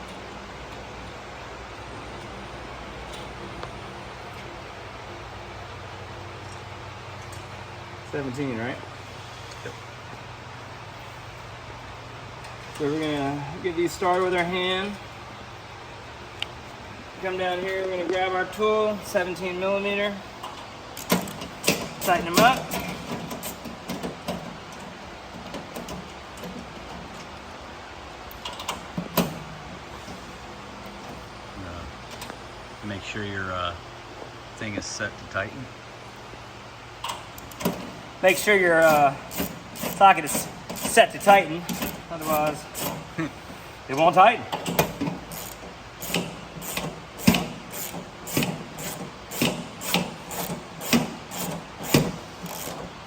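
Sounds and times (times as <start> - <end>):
hand ratchet clicking: 38.7 - 43.1, 44.6 - 52.9.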